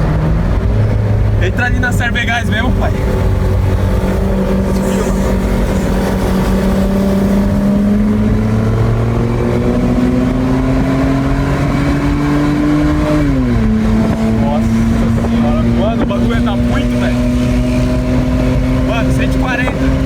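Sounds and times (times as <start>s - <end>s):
car engine accelerating: 0.0s - 20.0s.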